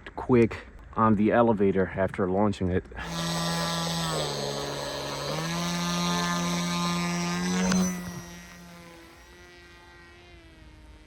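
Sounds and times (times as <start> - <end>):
electric motor propeller hum: 3.0 - 11.0.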